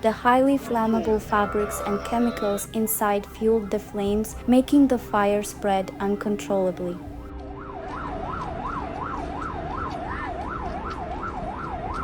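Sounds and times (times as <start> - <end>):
emergency siren wailing: 7.5 - 12.0.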